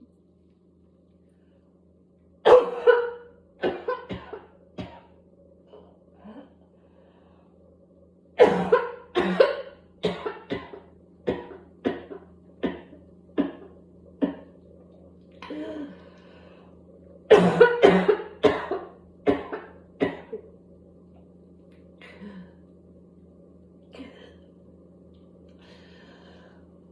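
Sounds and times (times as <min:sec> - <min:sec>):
person coughing: 0:02.5 - 0:05.2, 0:08.4 - 0:14.5, 0:17.3 - 0:20.4
person breathing in: 0:25.6 - 0:26.7.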